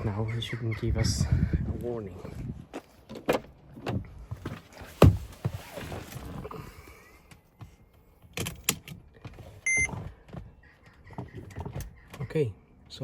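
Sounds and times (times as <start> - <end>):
car electronic beep: 9.6 - 9.9.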